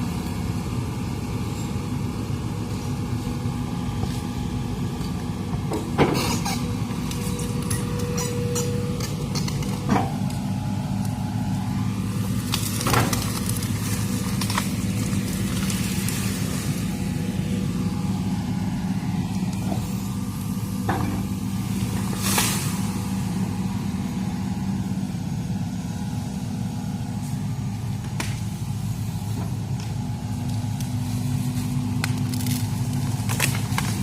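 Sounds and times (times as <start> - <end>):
excavator diesel engine running: 0.0 - 34.0
bamboo stems snapping: 12.4 - 16.3, 28.0 - 28.5, 29.8 - 34.0.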